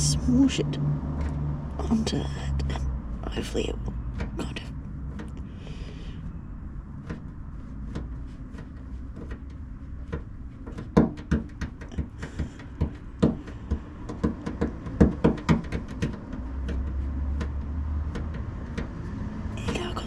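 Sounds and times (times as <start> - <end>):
light knocks and taps: 7.0 - 20.0.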